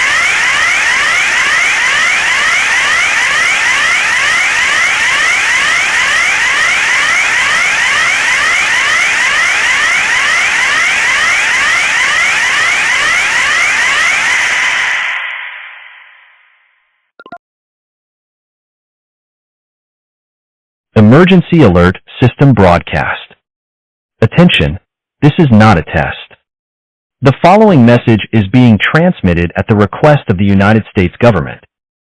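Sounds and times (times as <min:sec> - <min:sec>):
emergency alert rising sweeps: 0:00.0 - 0:16.6.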